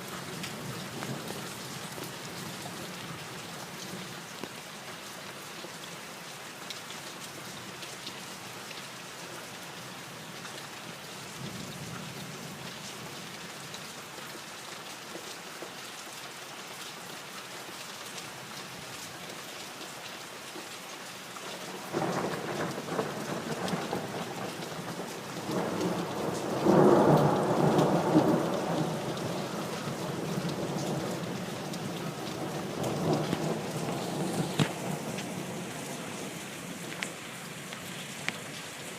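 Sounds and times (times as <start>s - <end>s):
steady rain falling: 0.0s - 38.9s
thunder rumbling: 21.9s - 37.1s.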